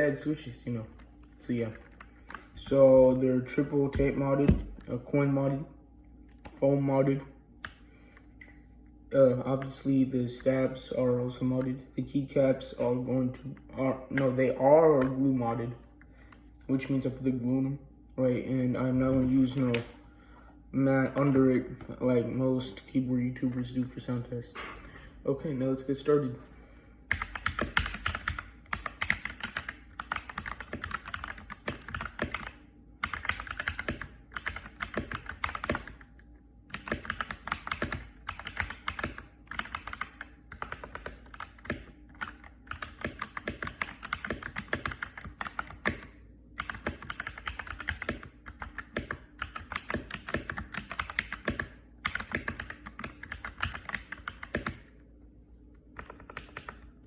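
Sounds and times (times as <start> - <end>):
mechanical keyboard typing: 27.1 - 36.0, 36.7 - 54.8, 56.0 - 56.8.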